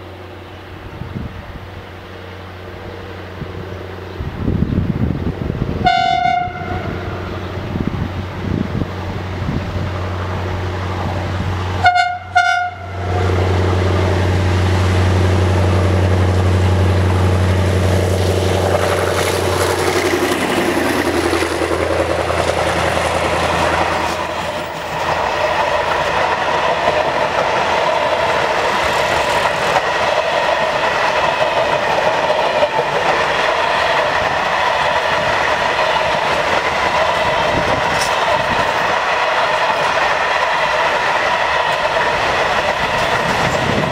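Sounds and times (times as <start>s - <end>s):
diesel locomotive engine drone: 0.0s - 43.9s
train wheels rolling: 0.0s - 43.9s
train horn blasts: 5.8s - 7.5s, 11.8s - 13.5s
wheels clacking on rail joints: 5.8s - 43.9s.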